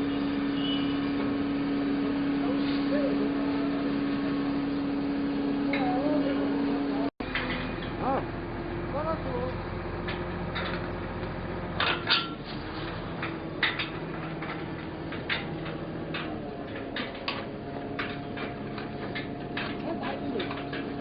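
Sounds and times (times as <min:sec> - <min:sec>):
clicks and knocks: 0:10.0 - 0:21.0.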